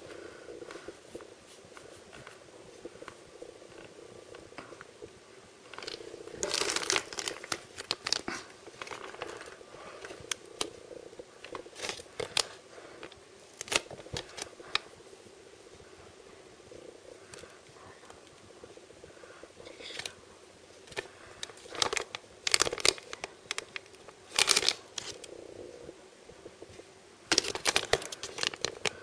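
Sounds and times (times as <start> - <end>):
packaging crinkling and tearing: 5.8 - 10.7, 11.5 - 12.6, 13.6 - 14.8, 20.9 - 25.2, 27.3 - 29.0.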